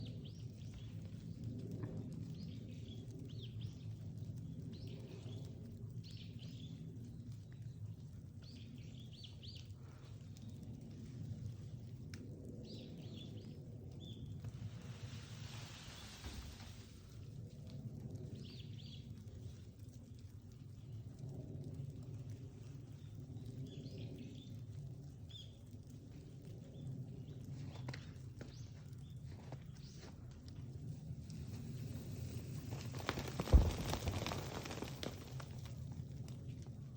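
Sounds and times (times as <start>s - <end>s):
low outdoor hum: 0.0s - 36.9s
steady low rumble: 0.0s - 36.9s
small birds chirping: 31.4s - 35.8s.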